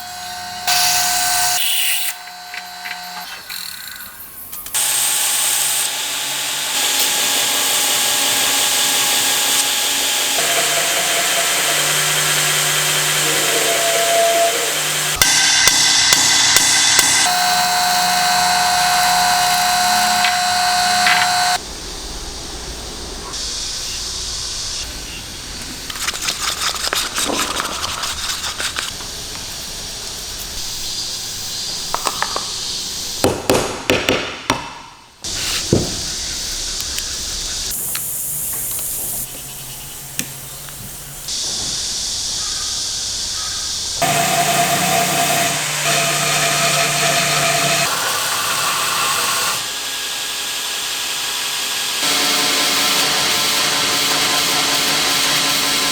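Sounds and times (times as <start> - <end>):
power tool whine: 0.0 - 3.7, 4.7 - 21.6, 43.4 - 55.9
scraping and knocking strokes: 25.6 - 29.2.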